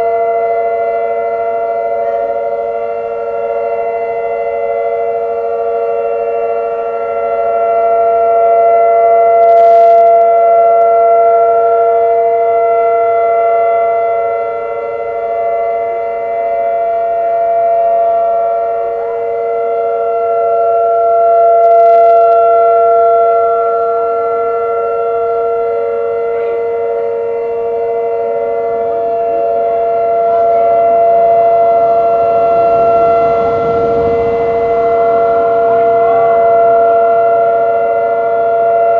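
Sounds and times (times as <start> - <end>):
warning sirens wailing: 0.0 - 38.9
rushing noise: 30.2 - 38.6.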